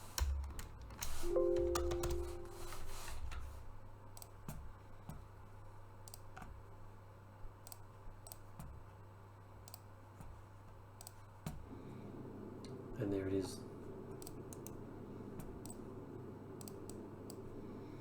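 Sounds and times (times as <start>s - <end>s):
computer mouse clicking: 0.0s - 4.5s, 6.0s - 6.7s, 7.6s - 8.8s, 9.6s - 10.0s, 10.9s - 11.6s, 14.1s - 14.8s, 15.4s - 15.9s, 16.6s - 17.6s.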